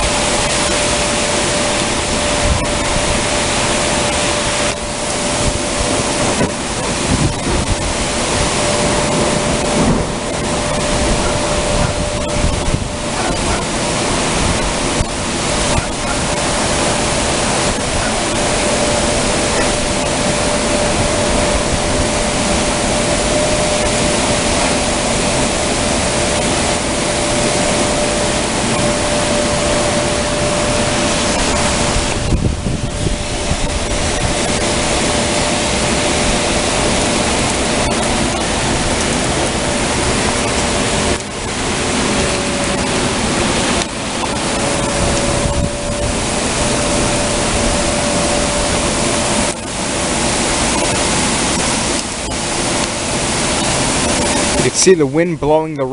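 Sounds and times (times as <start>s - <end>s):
gusting wind: 0.0s - 55.9s
heavy rain pouring: 0.0s - 55.9s.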